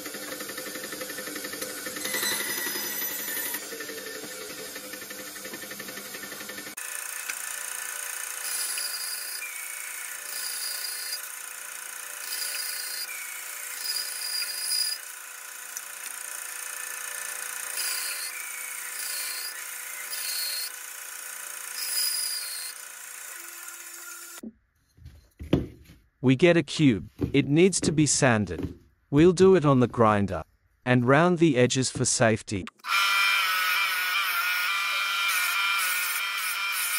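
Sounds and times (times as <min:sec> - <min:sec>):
hand saw cutting wood: 0:00.0 - 0:20.7.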